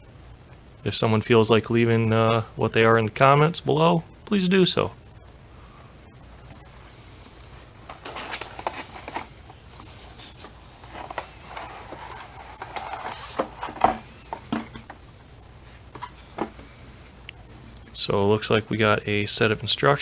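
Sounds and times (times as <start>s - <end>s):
packaging rustling: 6.8s - 17.1s.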